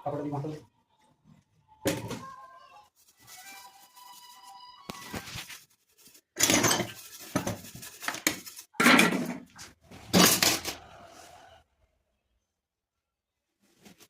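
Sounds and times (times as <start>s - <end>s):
tiling tools scraping: 5.0s - 11.5s.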